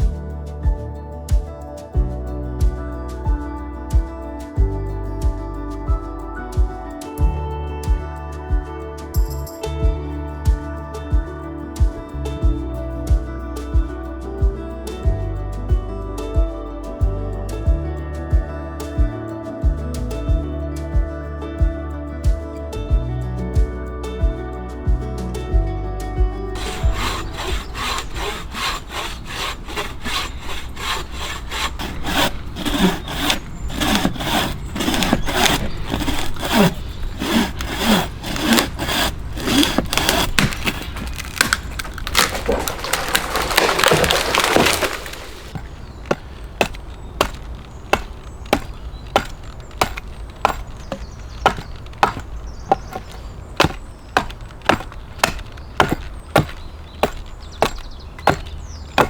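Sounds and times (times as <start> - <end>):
hand saw cutting wood: 26.6 - 59.0
sharp knocks on wood: 45.6 - 59.0.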